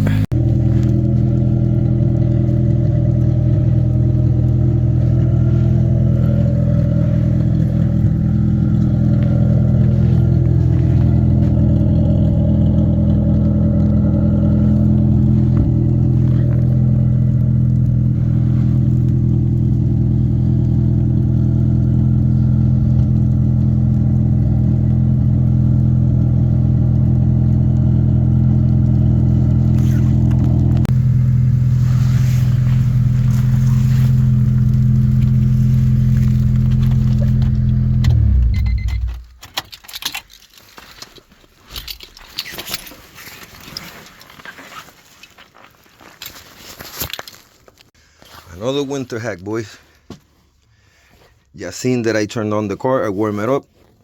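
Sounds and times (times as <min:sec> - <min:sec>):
car engine idling: 0:00.0 - 0:39.4.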